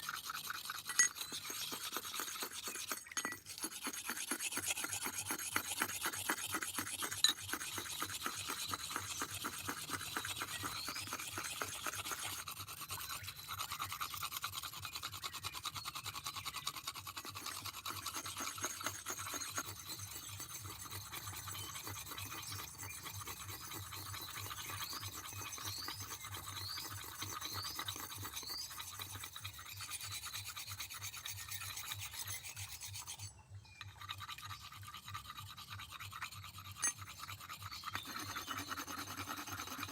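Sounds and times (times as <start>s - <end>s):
rapid scraping strokes: 0.0s - 12.6s.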